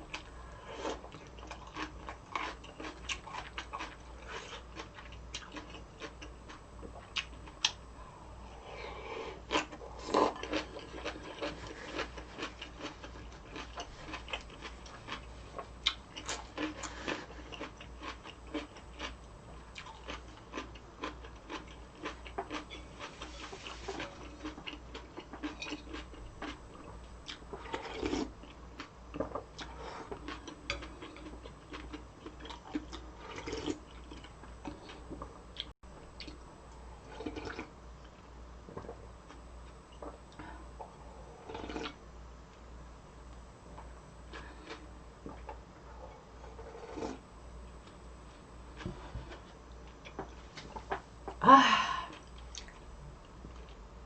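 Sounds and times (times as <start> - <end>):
close chewing and biting: 0.9 - 7.8, 9.5 - 36.3.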